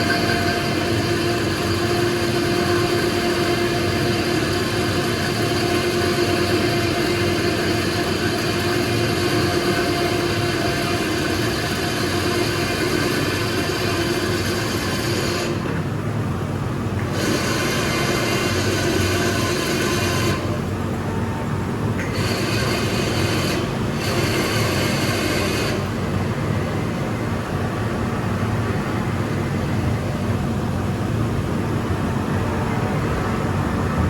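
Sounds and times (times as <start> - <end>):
machine tool cutting metal: 0.0 - 15.8, 17.0 - 20.6, 22.0 - 26.0
constant machine tone: 0.0 - 34.0.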